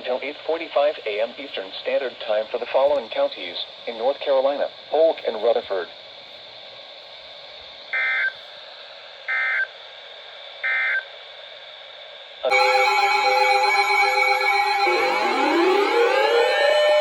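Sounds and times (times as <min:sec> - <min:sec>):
radio hiss: 0:00.0 - 0:12.8
digital data tone bursts: 0:12.5 - 0:17.0
electronic alert tone: 0:12.5 - 0:17.0.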